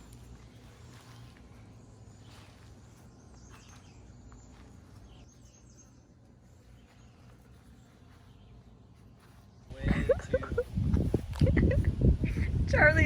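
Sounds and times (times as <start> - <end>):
faint high bird chirps: 0.0 - 9.7.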